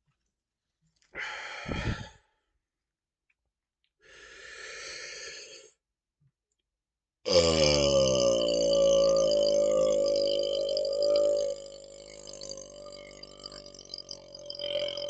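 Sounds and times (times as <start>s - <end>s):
heavy breathing: 1.2s - 2.4s
loud deep burp: 7.3s - 15.0s.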